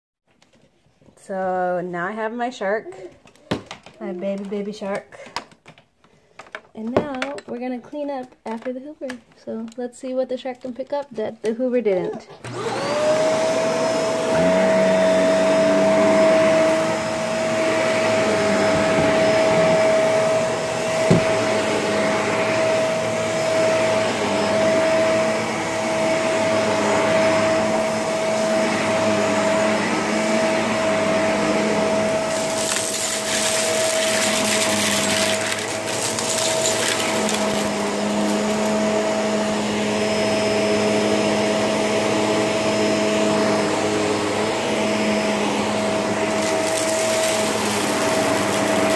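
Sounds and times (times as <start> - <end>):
vacuum cleaner running: 12.0 - 48.9.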